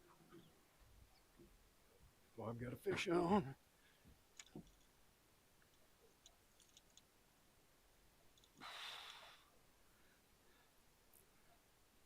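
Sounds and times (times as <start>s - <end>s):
faint clicks: 4.3s - 4.9s, 5.6s - 7.1s, 8.3s - 9.2s.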